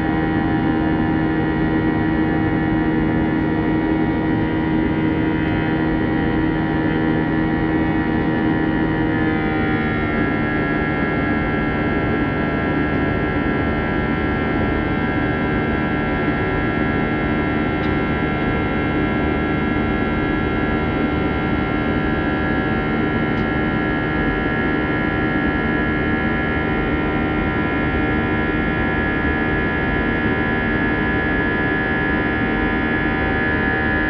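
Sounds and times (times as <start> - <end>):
jet engines droning: 0.2 - 34.0.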